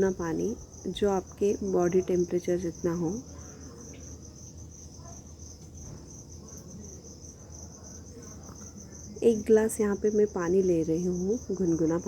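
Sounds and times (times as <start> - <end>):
crickets trilling: 0.0 - 12.0.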